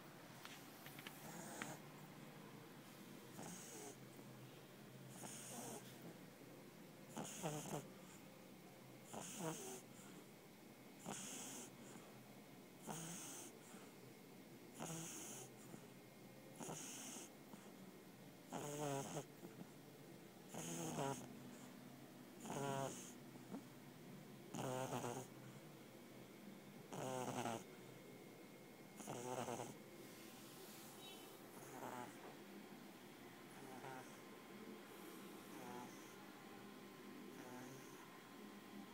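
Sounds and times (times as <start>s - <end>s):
dog snoring with rattle: 1.0s - 1.8s, 3.3s - 4.0s, 5.1s - 6.1s, 7.1s - 8.2s, 9.0s - 10.1s, 11.0s - 12.1s, 12.8s - 13.8s, 14.7s - 15.9s, 16.6s - 17.7s, 18.5s - 19.7s, 20.5s - 21.7s, 22.4s - 23.6s, 24.5s - 25.3s, 26.9s - 27.7s, 29.0s - 29.8s, 31.5s - 32.3s, 33.5s - 34.2s, 35.0s - 36.2s, 37.3s - 38.0s.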